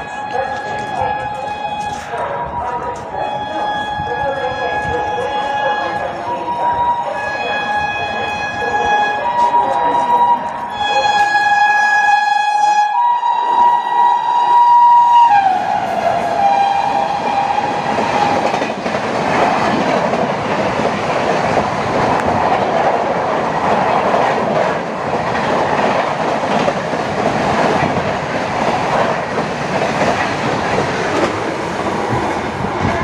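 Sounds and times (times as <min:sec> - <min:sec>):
locomotive horn: 0:00.0 - 0:17.8
train wheels on rail: 0:00.0 - 0:33.0.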